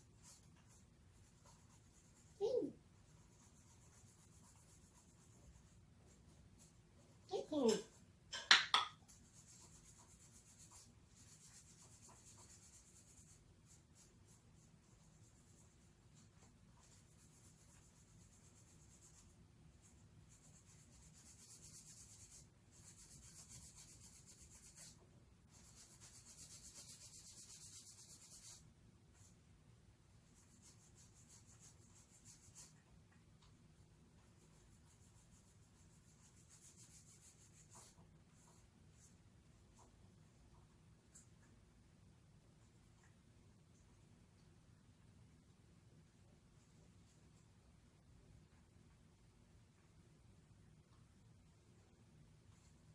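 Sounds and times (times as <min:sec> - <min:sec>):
soft scratching or rubbing: 0:00.0 - 0:08.1, 0:09.1 - 0:29.4, 0:30.2 - 0:32.9, 0:34.2 - 0:41.5
faint steady hum: 0:00.0 - 0:52.9.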